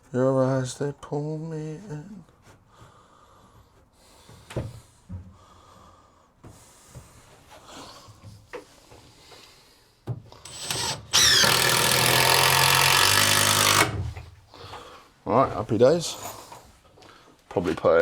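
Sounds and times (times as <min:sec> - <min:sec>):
cordless drill driving screw: 0:10.4 - 0:14.3.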